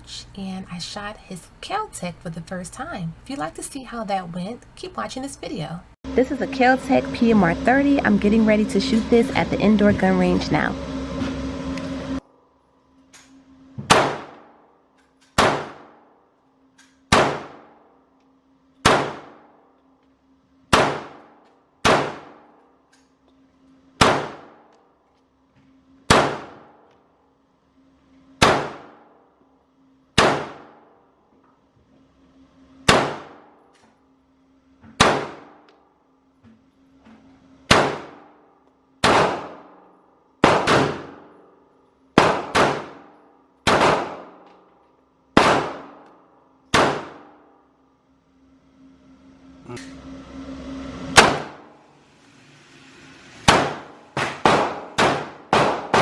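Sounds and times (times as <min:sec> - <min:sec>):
faint low hum: 0:00.0 - 0:10.8
pistol shots echoing indoors: 0:18.8 - 0:19.6, 0:20.7 - 0:22.6, 0:26.1 - 0:26.8, 0:28.4 - 0:29.2, 0:30.2 - 0:30.9, 0:32.8 - 0:33.6, 0:35.0 - 0:35.6, 0:37.7 - 0:38.3, 0:39.0 - 0:41.6, 0:42.2 - 0:44.6, 0:45.4 - 0:47.6, 0:53.5 - 0:56.0.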